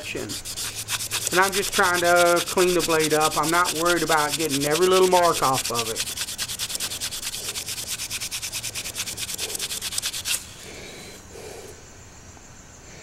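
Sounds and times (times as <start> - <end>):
sandpaper rubbing on metal blade: 0.0 - 10.6.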